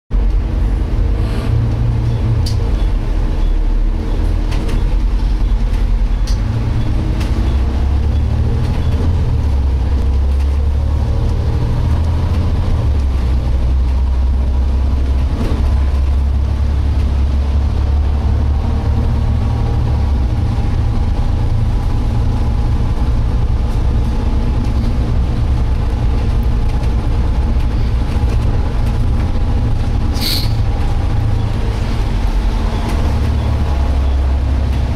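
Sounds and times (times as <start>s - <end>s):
bus engine and road rumble: 0.1s - 34.9s.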